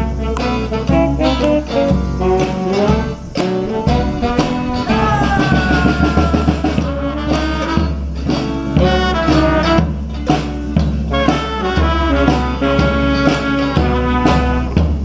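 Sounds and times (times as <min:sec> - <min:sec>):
live band playing swing tune: 0:00.0 - 0:15.0.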